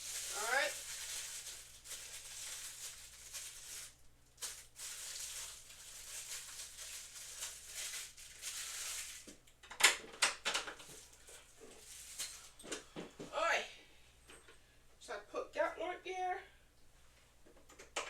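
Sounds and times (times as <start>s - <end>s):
rustling and handling of parts: 0.0s - 13.3s.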